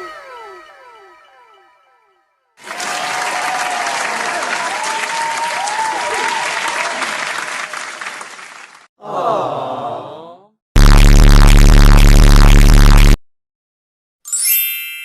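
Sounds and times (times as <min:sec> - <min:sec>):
crowd clapping and cheering: 0:02.6 - 0:08.9.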